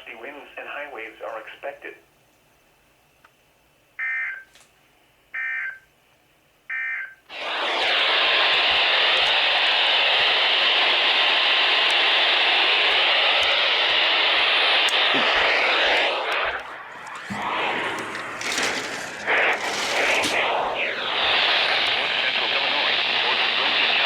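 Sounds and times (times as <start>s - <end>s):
radio static hiss: 0.0s - 2.1s, 7.3s - 24.0s.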